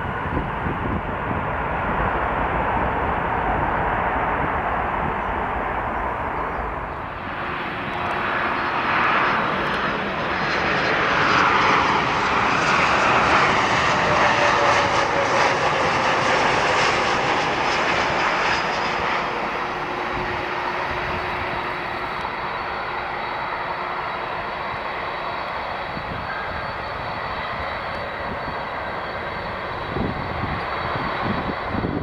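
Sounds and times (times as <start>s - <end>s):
faint downward whine: 0.0s - 32.0s
jet engines roaring: 0.0s - 32.0s.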